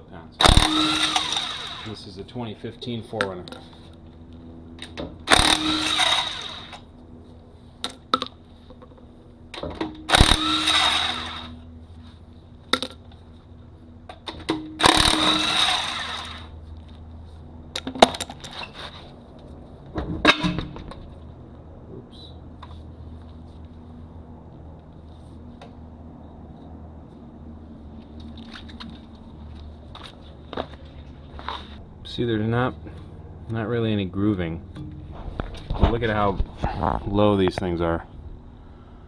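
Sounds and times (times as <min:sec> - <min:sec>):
impact wrench spinning: 0:00.5 - 0:01.9, 0:05.3 - 0:06.9, 0:10.1 - 0:11.5, 0:14.8 - 0:16.5.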